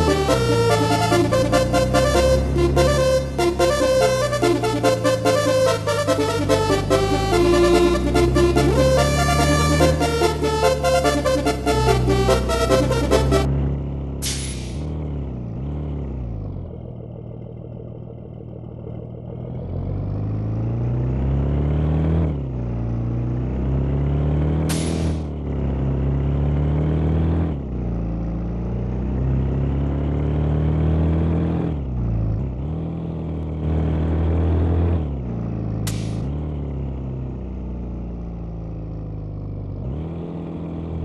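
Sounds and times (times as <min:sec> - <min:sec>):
bus diesel engine accelerating: 0:00.0 - 0:41.0
air brakes hissing: 0:14.2 - 0:14.9, 0:24.7 - 0:25.3, 0:35.9 - 0:36.3.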